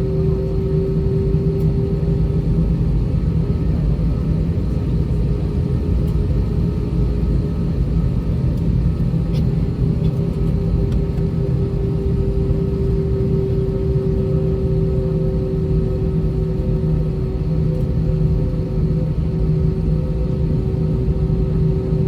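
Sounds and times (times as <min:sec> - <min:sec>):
aircraft cabin low rumble: 0:00.0 - 0:22.0
constant engine hum: 0:00.0 - 0:22.0.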